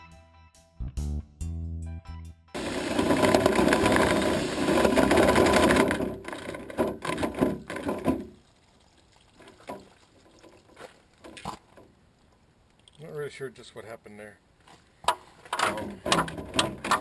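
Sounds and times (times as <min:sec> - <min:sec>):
drill brush rattling in duct: 0:02.6 - 0:08.4, 0:15.5 - 0:17.0.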